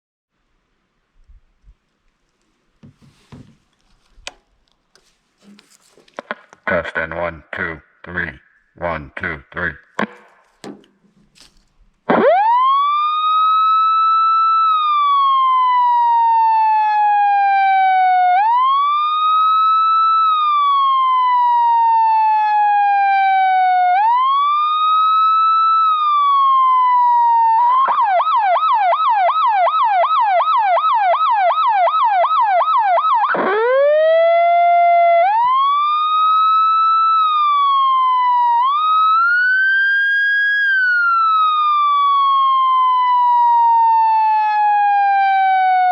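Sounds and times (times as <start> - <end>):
electronic siren wailing and yelping: 12.1 - 45.9.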